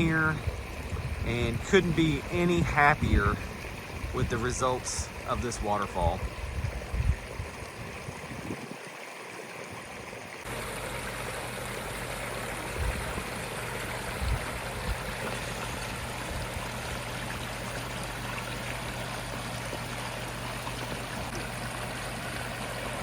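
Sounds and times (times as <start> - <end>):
waterfall rushing: 4.1 - 6.2.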